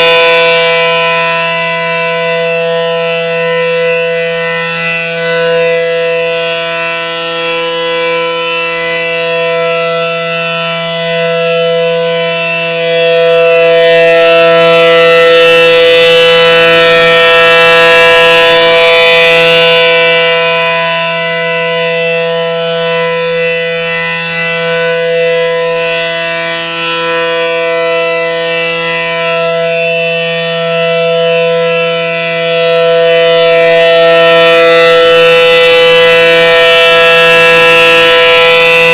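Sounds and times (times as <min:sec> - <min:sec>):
electromechanical siren steady alert: 0:00.0 - 0:38.9.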